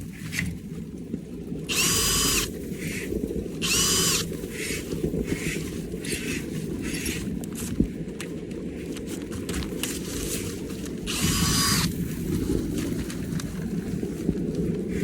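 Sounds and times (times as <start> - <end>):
drill motor whine: 1.7 - 2.5, 3.6 - 4.8, 11.1 - 11.9
short bursts of noise: 11.1 - 11.9.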